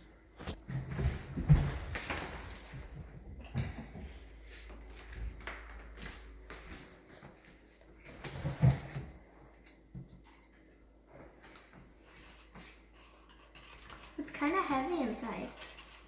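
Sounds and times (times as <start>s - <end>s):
stirrer knocking and scraping in cup: 12.2s - 16.0s.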